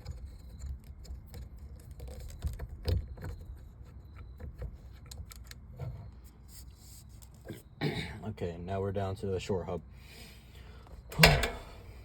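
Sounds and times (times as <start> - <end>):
metallic clicks of tools and screws: 11.1 - 11.8.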